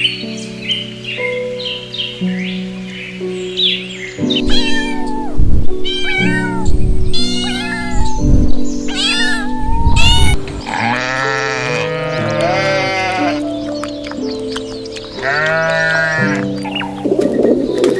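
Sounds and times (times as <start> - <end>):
background music: 0.0 - 17.9
cat meowing: 4.5 - 8.3, 8.9 - 10.4
sheep bleating: 10.1 - 13.5, 15.2 - 16.5.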